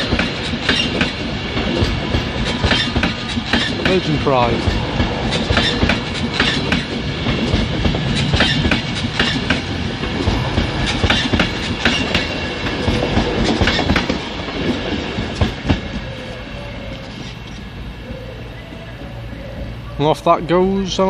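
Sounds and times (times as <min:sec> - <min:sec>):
wheels clacking over rail joints: 0:00.0 - 0:16.1
electric train rumbling: 0:00.0 - 0:21.0.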